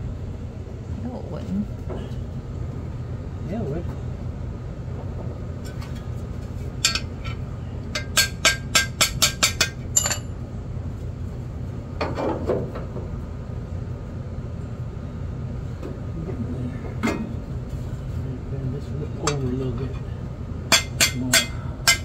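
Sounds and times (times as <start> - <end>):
hammer tapping on sheet metal: 8.0 - 10.2, 20.7 - 22.0.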